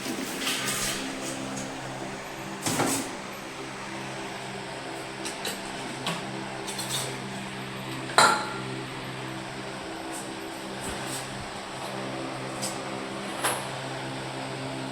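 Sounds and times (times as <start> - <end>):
cotton candy machine humming: 0.0 - 14.9.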